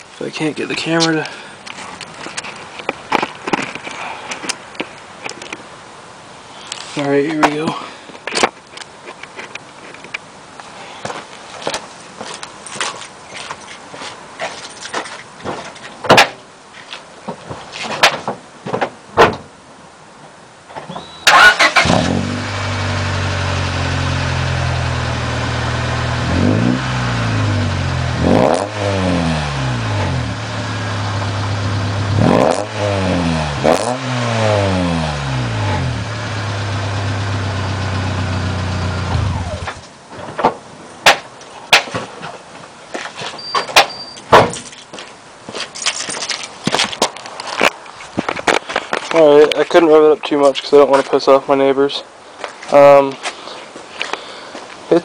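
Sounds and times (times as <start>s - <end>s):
car engine idling and revving: 21.5s - 39.8s.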